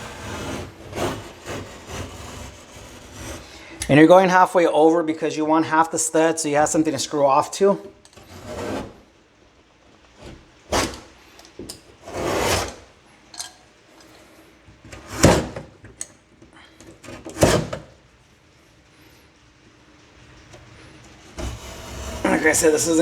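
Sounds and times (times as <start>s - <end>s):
saw rasping through drywall: 0.0s - 3.8s, 8.2s - 9.1s, 10.2s - 11.2s, 12.0s - 12.9s, 14.9s - 15.7s, 17.0s - 17.9s, 21.3s - 23.0s.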